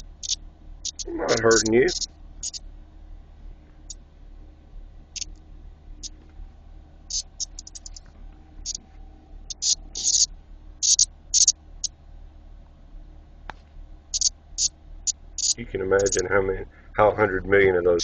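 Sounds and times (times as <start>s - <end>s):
cicada distress buzzes: 0.0s - 2.6s, 5.1s - 5.4s, 7.1s - 8.8s, 9.5s - 11.9s, 14.1s - 16.4s.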